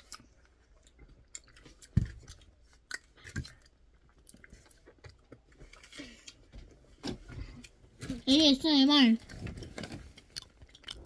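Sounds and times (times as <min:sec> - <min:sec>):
person chewing: 0:00.0 - 0:06.5, 0:10.2 - 0:11.0.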